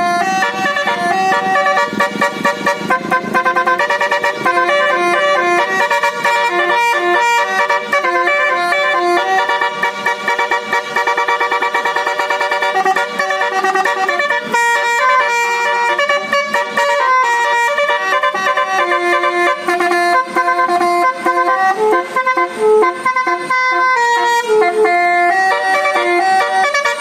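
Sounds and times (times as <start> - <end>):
multi-tone bus horn tune: 0.0 - 27.0.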